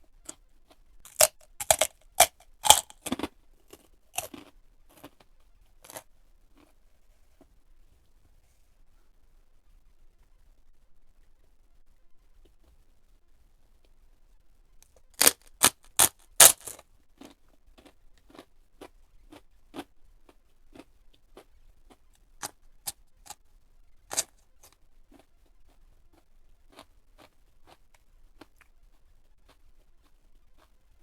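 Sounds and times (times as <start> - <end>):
crunching of crispy food: 0.3 - 6.8, 14.8 - 23.4, 24.1 - 30.8.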